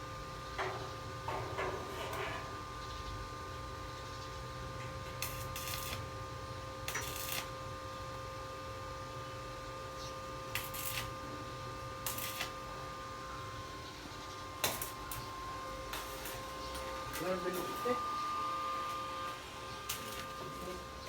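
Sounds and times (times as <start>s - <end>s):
steady hum: 5.2s - 21.0s.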